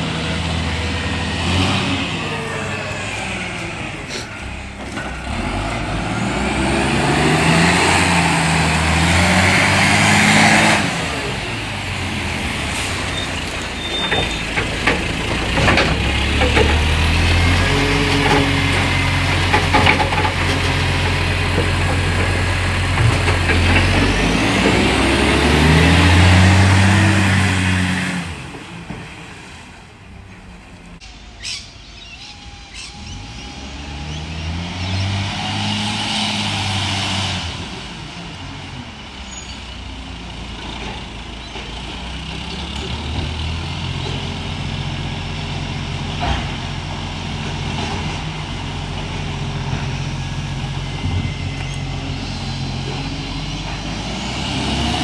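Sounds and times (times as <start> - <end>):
diesel truck engine revving: 0.0 - 31.0, 32.3 - 55.0
knocks and clatter: 13.3 - 27.4.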